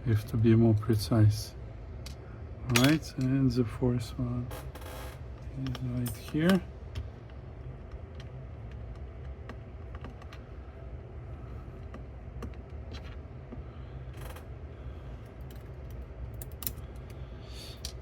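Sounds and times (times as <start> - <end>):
steady low hum: 0.0 - 18.0
light clicks of metal parts: 2.0 - 3.4, 5.5 - 10.4, 15.2 - 18.0.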